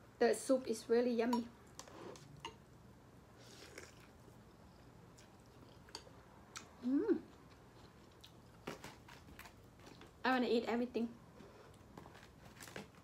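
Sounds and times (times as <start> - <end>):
person chewing food: 3.4 - 10.1
person humming: 6.8 - 7.3.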